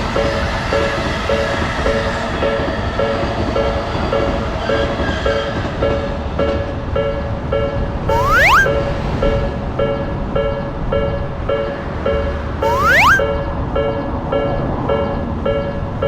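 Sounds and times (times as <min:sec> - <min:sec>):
passing train rumble: 0:00.0 - 0:08.1, 0:08.7 - 0:16.0
level-crossing alarm bell ringing: 0:07.0 - 0:08.9, 0:10.4 - 0:15.8.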